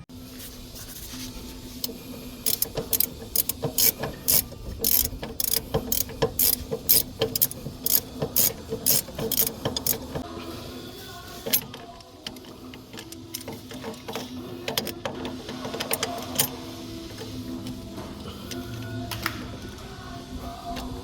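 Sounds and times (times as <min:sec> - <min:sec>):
ratchet wrench clicking: 0:01.8 - 0:10.2, 0:11.4 - 0:17.3.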